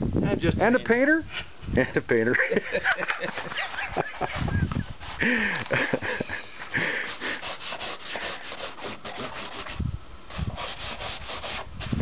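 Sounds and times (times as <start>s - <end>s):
wood being hand-sanded: 3.0s - 12.0s.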